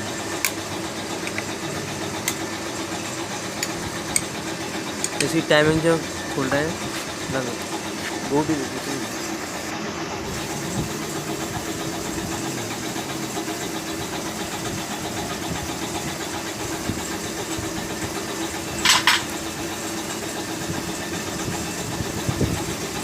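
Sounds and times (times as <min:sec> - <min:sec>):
car engine idling: 0:00.0 - 0:21.5.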